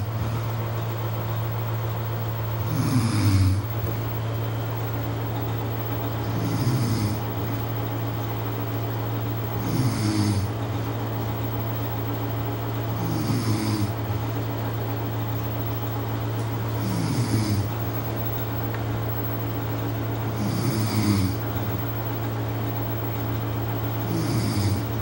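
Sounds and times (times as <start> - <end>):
steady low hum: 0.0 - 25.0
man snoring: 2.6 - 3.8, 6.2 - 7.3, 9.6 - 10.6, 13.0 - 14.0, 16.8 - 17.8, 20.3 - 21.4, 24.0 - 25.0.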